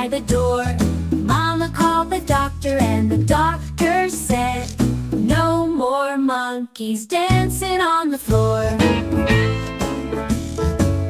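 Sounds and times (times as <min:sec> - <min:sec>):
upbeat instrumental backing music: 0:00.0 - 0:05.6, 0:08.3 - 0:11.0
steady bass and beat: 0:08.7 - 0:11.0
plucked guitar: 0:08.8 - 0:11.0.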